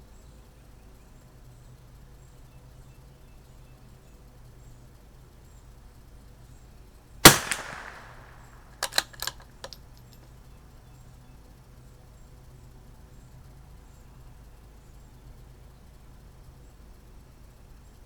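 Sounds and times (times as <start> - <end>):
rifle shot: 7.2 - 9.8
rifle bolt metallic clicks: 7.3 - 9.8.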